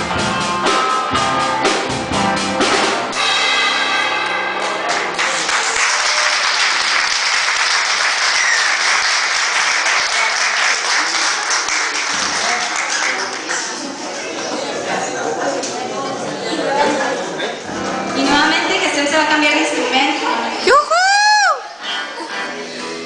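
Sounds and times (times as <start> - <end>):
live rock band playing: 0.0 - 8.7, 17.7 - 19.0, 21.7 - 23.0
audience applause: 4.8 - 15.1.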